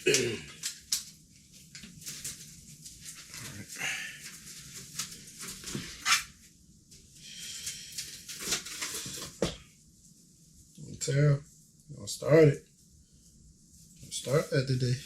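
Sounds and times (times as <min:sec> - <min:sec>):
cables rustling: 0:00.0 - 0:12.0.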